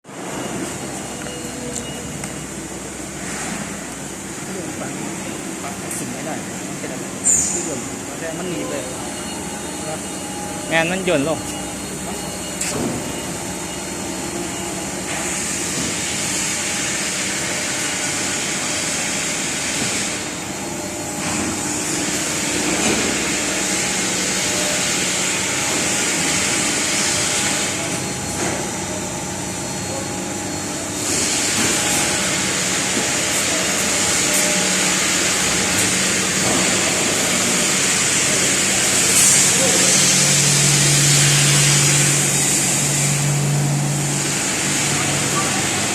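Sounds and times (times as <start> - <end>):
industrial machinery hum: 0.0 - 45.9.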